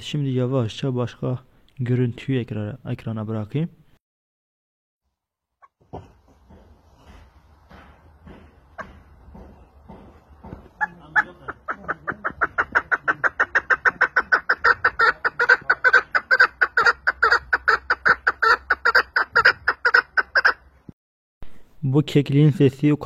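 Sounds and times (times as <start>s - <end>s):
partridge calling: 10.4s - 20.7s.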